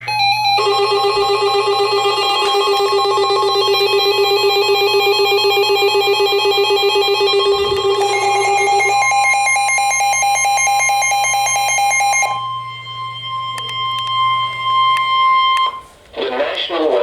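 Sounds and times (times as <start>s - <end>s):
buzzy electronic alert tone: 0.1s - 13.4s.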